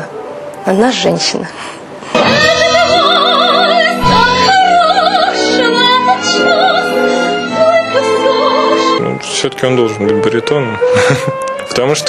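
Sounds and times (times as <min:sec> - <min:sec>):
instrumental accompaniment: 0:00.1 - 0:12.0
soprano singing operatically: 0:02.2 - 0:09.0.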